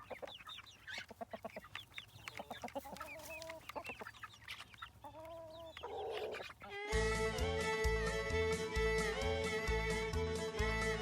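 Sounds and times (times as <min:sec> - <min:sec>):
hens clucking: 0:00.0 - 0:07.6
chicks peeping: 0:00.0 - 0:11.0.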